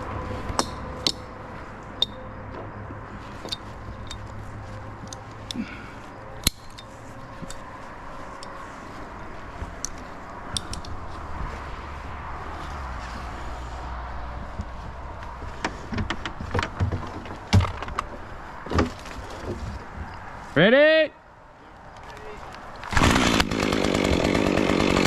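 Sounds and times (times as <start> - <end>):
sharp clicks and knocks: 9.6 - 11.1, 14.4 - 20.2.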